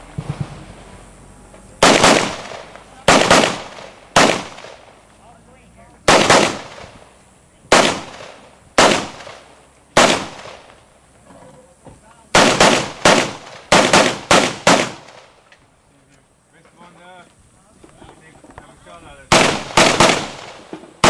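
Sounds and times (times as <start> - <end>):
rifle shots: 1.8 - 4.9, 6.1 - 7.0, 7.7 - 10.8, 12.3 - 15.4, 19.3 - 21.0.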